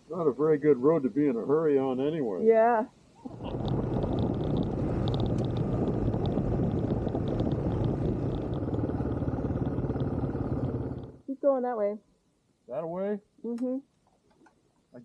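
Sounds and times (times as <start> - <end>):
wind and road noise: 3.2 - 11.2
motorcycle engine running: 3.3 - 11.2
small ticks: 3.3 - 11.2.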